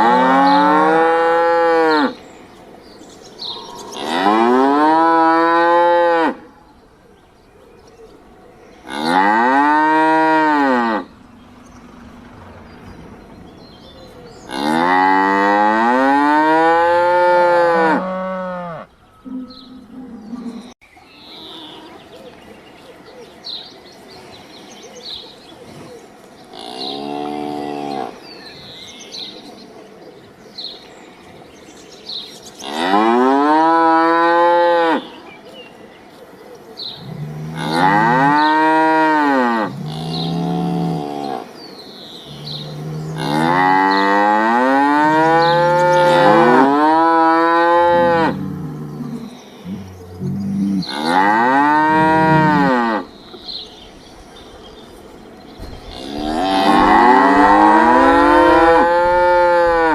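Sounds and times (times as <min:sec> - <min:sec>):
cow mooing: 0:00.0 - 0:02.2, 0:03.4 - 0:06.4, 0:08.8 - 0:13.2, 0:14.2 - 0:20.8, 0:37.0 - 0:41.5, 0:42.3 - 0:53.1, 0:55.8 - 0:59.9.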